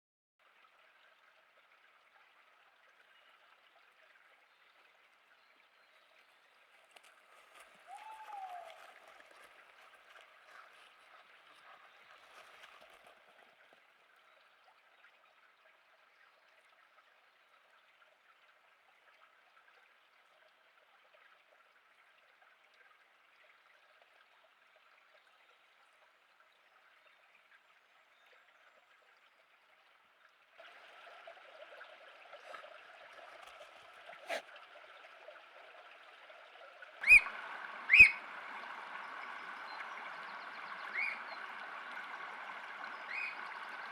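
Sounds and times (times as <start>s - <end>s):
trickle of running water: 0.4s - 43.9s
otter squeaks: 37.0s - 37.3s, 37.9s - 38.2s.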